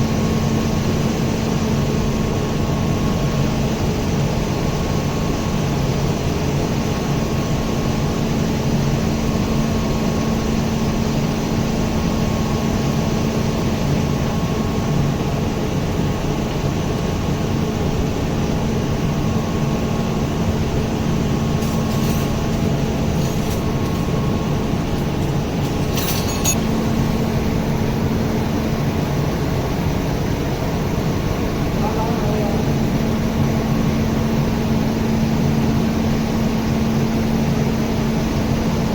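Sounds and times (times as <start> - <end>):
machinery humming: 20.4 - 28.6.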